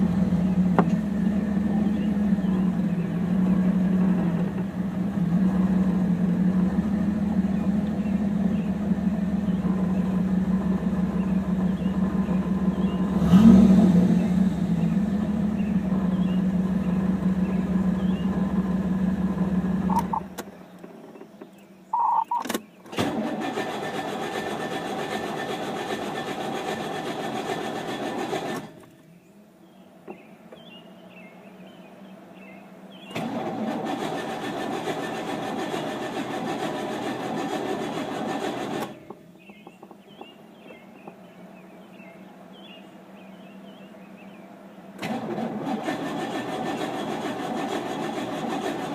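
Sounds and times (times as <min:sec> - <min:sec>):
car engine running: 0:00.0 - 0:48.9
clicks: 0:19.9 - 0:23.0
starter motor cranking: 0:22.4 - 0:28.9, 0:33.1 - 0:39.2, 0:45.0 - 0:48.9.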